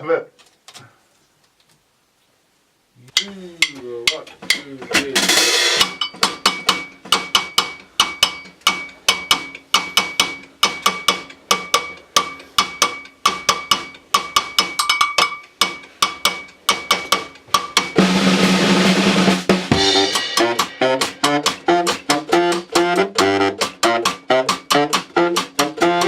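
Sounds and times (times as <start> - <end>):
drum roll: 3.1 - 14.8, 15.7 - 26.0
snare and bass drum beat: 3.1 - 26.0
brass horn notes: 18.0 - 26.0.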